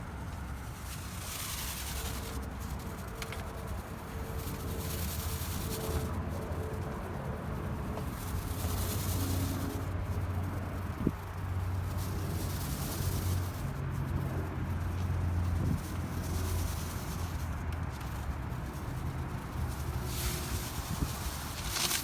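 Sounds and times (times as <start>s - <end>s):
awning motor humming: 7.0s - 22.0s.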